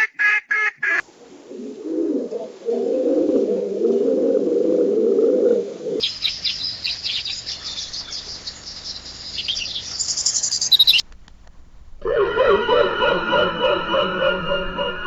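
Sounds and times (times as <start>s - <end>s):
low cooing call: 1.3s - 6.2s, 12.0s - 15.0s
small bird chirping and trilling: 6.0s - 11.0s.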